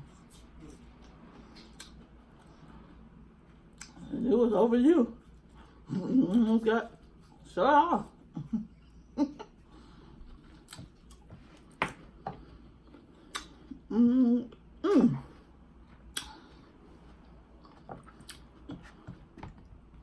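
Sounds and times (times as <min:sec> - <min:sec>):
wet mouth clicks and smacks: 0:01.5 - 0:02.0, 0:13.3 - 0:13.6, 0:16.1 - 0:16.4
person humming: 0:13.8 - 0:15.4.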